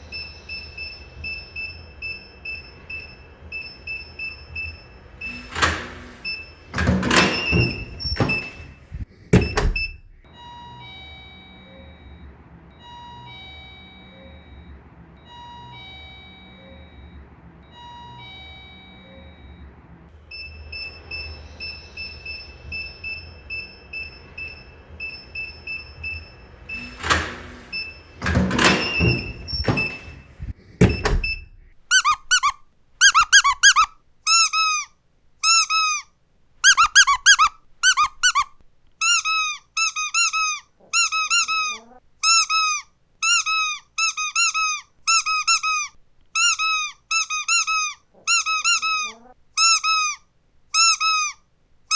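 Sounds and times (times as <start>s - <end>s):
steady high tone: 9.4s - 28.0s
squeaky dog toy: 31.2s - 51.9s.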